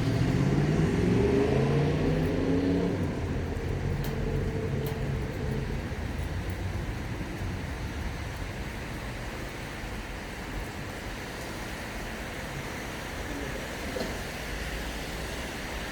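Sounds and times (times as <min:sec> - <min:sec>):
car accelerating past: 0:00.0 - 0:08.6.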